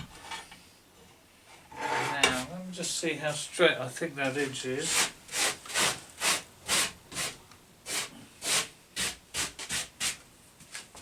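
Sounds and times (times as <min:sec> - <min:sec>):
hand scraping along wood: 0:04.3 - 0:10.2.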